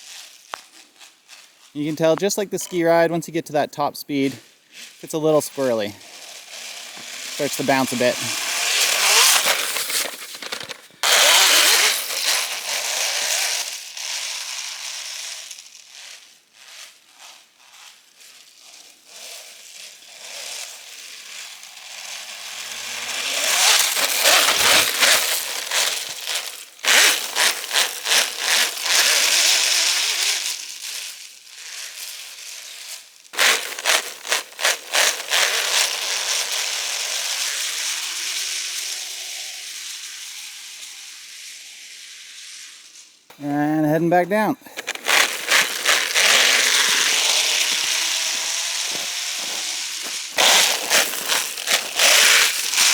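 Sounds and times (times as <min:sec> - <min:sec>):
rc snowmobile track churning slush: 0:00.0 - 0:52.9.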